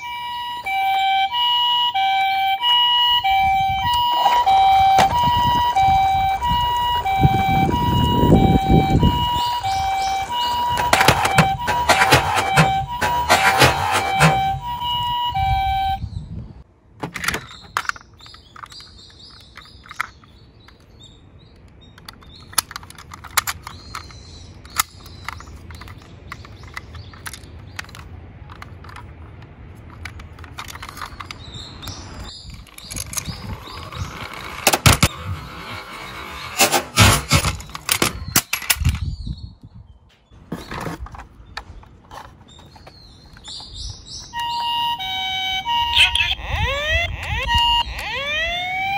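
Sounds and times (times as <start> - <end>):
toy cars rolling rumble: 3.8 - 14.8, 21.9 - 39.0
toy cars clicking and clacking: 8.4 - 14.8, 17.0 - 20.9, 21.6 - 39.1.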